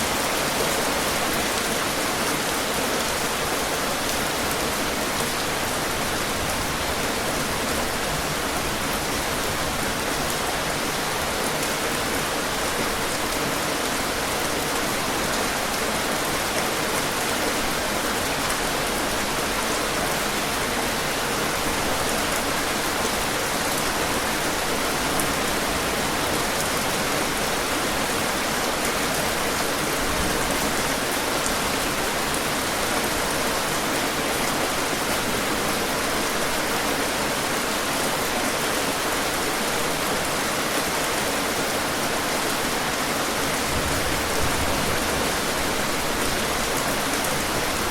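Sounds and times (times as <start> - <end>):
heavy rain falling: 0.0 - 47.9.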